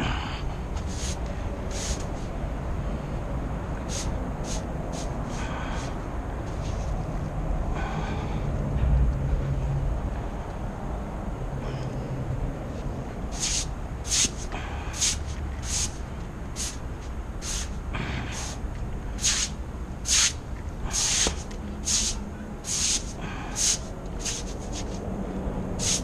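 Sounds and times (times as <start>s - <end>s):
hand scrubbing hard surface: 0.8s - 2.2s, 3.9s - 6.9s, 13.3s - 18.6s, 19.2s - 25.0s, 25.8s - 26.0s.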